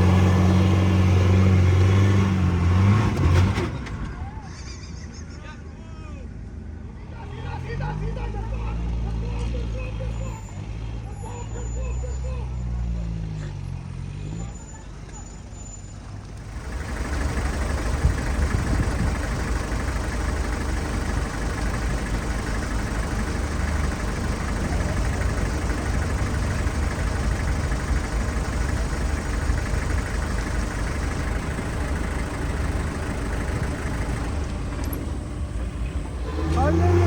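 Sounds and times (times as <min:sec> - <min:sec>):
car engine running: 0:00.0 - 0:04.5, 0:14.6 - 0:37.0.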